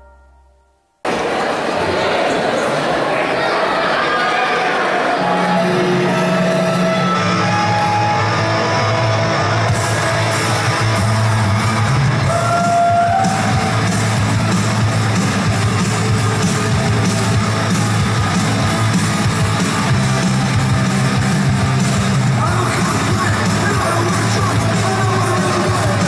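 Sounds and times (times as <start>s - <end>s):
rock music with electric guitar: 5.6s - 26.0s.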